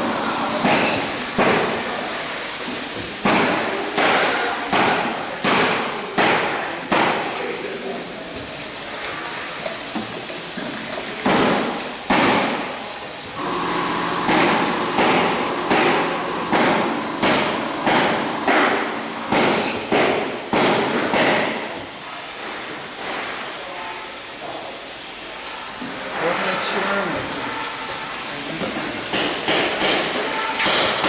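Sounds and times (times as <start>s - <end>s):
filling machine noisy bursts: 0.0s - 4.0s, 12.5s - 20.6s
steady machine hum: 0.0s - 5.3s, 6.8s - 22.1s.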